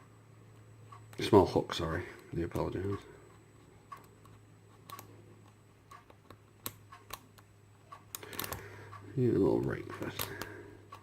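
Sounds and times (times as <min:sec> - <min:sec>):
faint steady hum: 0:00.0 - 0:11.0
lock picking metal clicks: 0:08.1 - 0:08.6.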